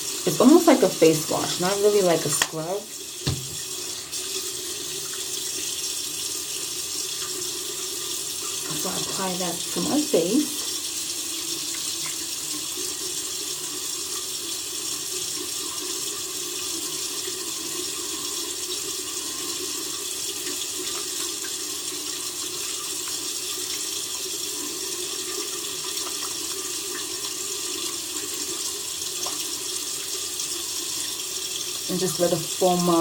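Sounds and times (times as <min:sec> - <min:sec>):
tap water pouring into basin: 0:00.0 - 0:33.0.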